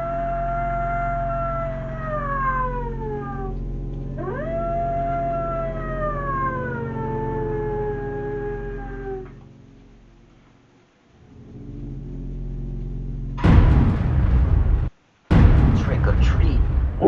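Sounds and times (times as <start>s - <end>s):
long sliding howls: 0.0s - 9.4s.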